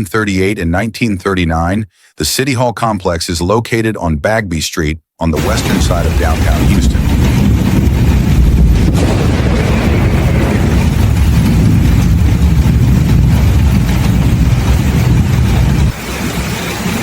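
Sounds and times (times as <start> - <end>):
thunder rumbling: 5.4 - 17.0.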